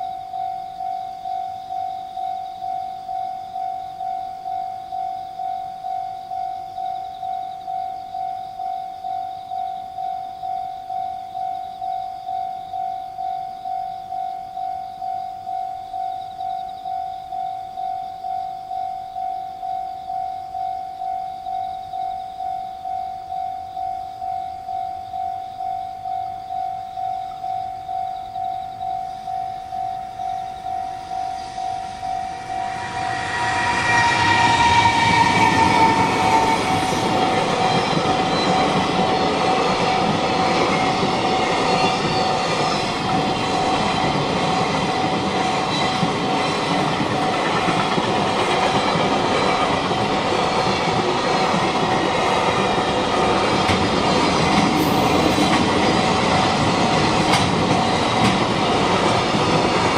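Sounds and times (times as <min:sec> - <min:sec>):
crossing alarm bell dinging: 0:00.0 - 0:59.9
train passing: 0:00.0 - 0:59.9
train horn tone: 0:29.3 - 0:38.7.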